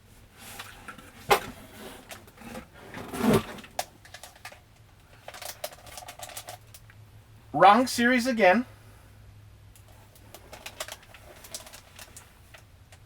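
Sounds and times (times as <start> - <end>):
packaging rustling: 0.5 - 6.8, 10.1 - 12.6
packaging clicks: 10.2 - 12.2.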